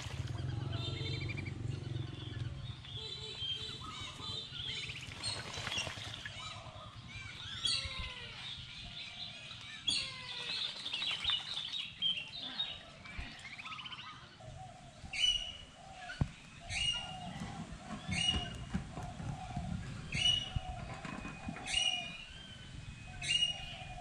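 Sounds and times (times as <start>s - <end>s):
birds chirping and calling: 0.0s - 24.0s.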